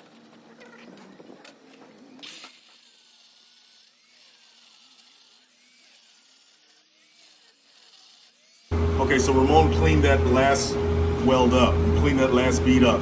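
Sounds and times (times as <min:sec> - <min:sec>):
power tool cleaning weld: 0:02.2 - 0:10.2.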